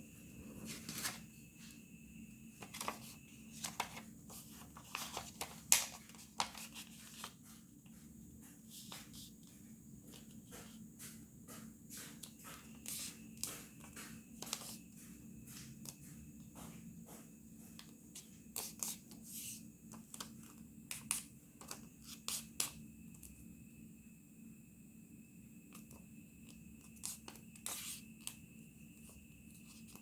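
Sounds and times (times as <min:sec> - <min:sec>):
low steady hum: 0:00.0 - 0:05.6
paper rustling and crackling: 0:00.6 - 0:01.3, 0:02.6 - 0:07.4.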